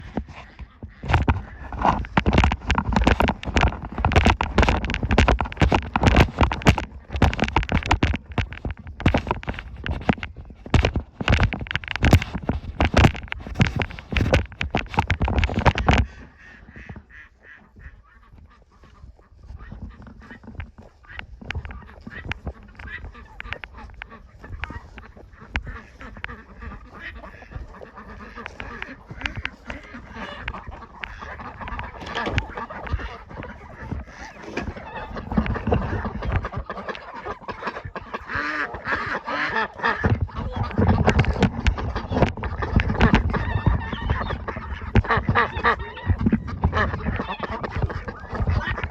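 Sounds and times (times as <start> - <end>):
clicks and knocks: 0.0 - 17.1
waterfowl honking and calling: 0.0 - 48.9
loud rapid crunching knocks: 1.0 - 16.2, 19.6 - 36.8, 38.1 - 48.9.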